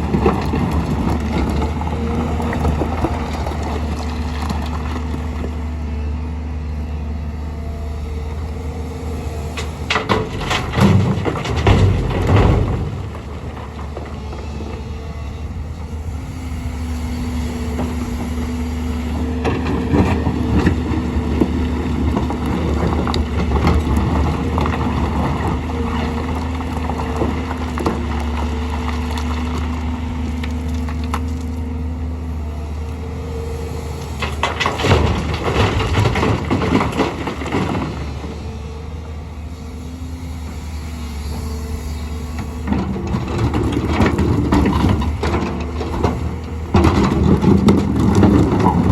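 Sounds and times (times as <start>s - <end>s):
diesel excavator engine: 0.0s - 48.9s.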